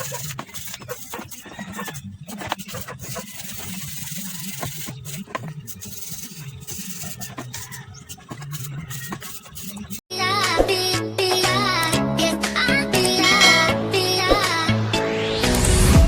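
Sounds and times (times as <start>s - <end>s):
scrubbing engine parts by hand: 0.0s - 10.0s.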